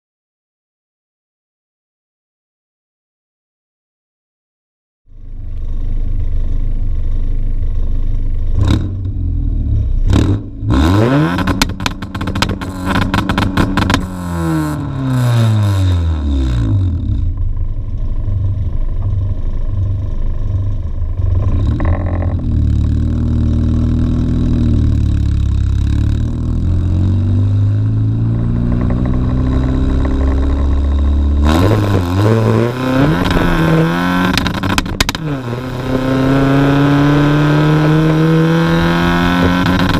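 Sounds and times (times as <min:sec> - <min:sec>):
car exhaust revving: 0:05.2 - 0:39.9
sharp knocks: 0:28.2 - 0:32.2.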